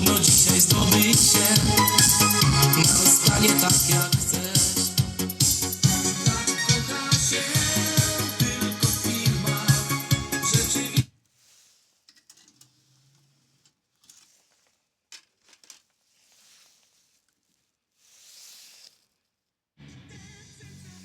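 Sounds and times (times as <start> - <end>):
stereo music: 0.0 - 11.1.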